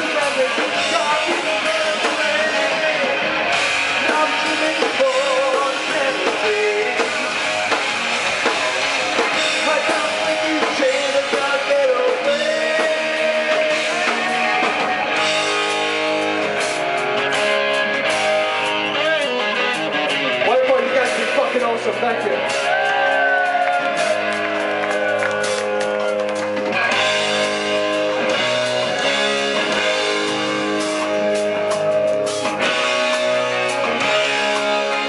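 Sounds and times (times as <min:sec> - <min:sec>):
person singing: 0:00.0 - 0:07.2, 0:09.5 - 0:14.8
rock band playing: 0:00.0 - 0:35.0.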